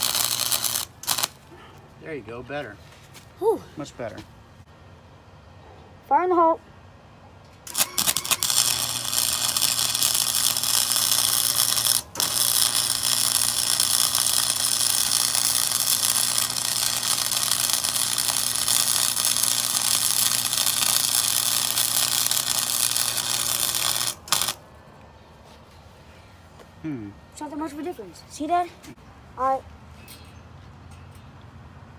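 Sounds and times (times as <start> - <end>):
welder low hum: 0.0 - 1.5, 7.7 - 24.7
welding arc crackling: 0.0 - 1.5, 7.7 - 24.7.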